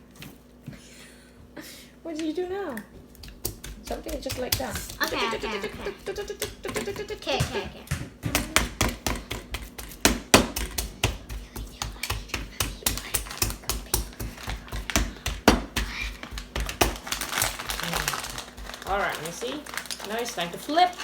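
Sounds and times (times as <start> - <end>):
meat tenderiser pounding steak: 3.0 - 19.4.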